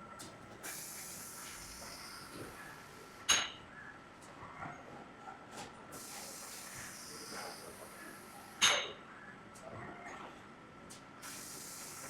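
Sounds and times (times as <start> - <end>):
high hiss of pressurised spray: 6.0 - 7.7, 11.2 - 12.0.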